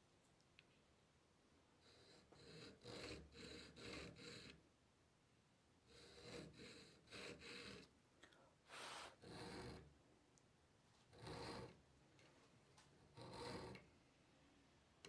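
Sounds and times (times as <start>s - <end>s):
short loud hiss: 8.7s - 9.2s.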